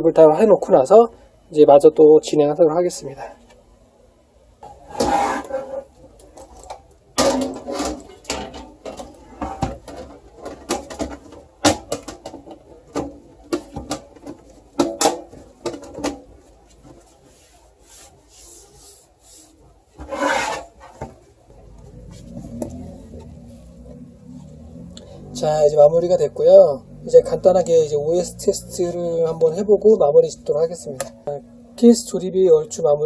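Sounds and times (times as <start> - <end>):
low steady hum: 0.0 - 33.0
loud scrape: 4.6 - 5.9, 20.0 - 21.0
computer case panels knocking: 7.2 - 16.3.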